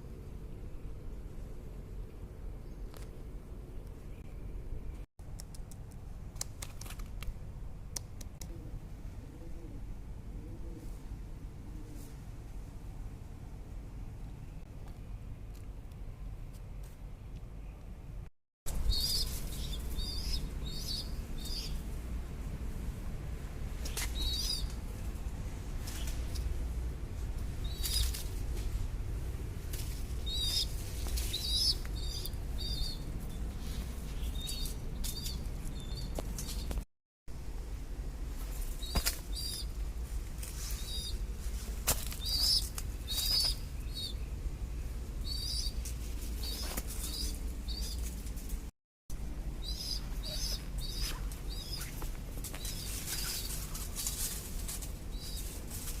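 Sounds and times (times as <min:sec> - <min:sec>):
steady low rumble: 0:00.0 - 0:56.0
pigeon chicks squeaking: 0:18.8 - 0:21.8, 0:30.2 - 0:33.0, 0:42.1 - 0:44.2, 0:45.2 - 0:48.1, 0:49.6 - 0:54.3.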